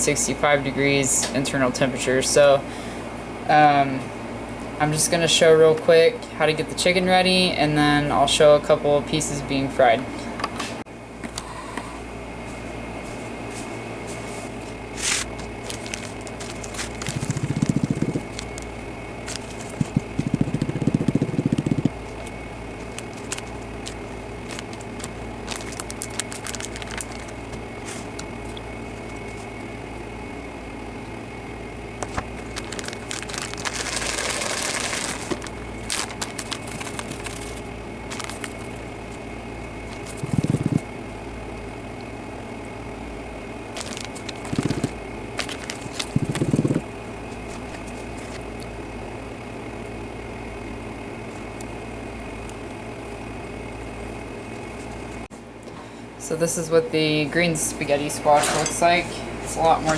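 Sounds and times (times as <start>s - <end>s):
steady hum: 0.0s - 59.9s
plastic bag crinkling: 15.2s - 18.7s, 22.8s - 27.6s, 32.0s - 38.8s, 43.8s - 46.8s.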